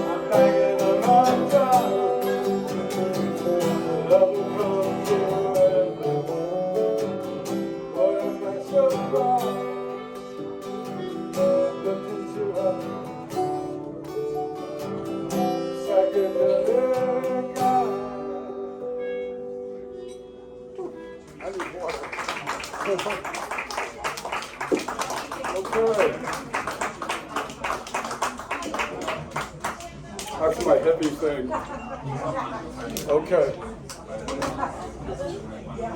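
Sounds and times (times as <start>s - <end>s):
acoustic guitar playing: 0.0s - 21.8s.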